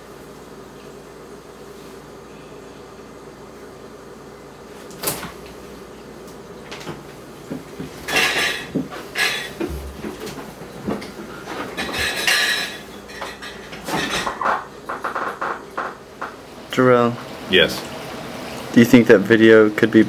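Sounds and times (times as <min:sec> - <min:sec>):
dishes clattering: 0:08.0 - 0:16.4.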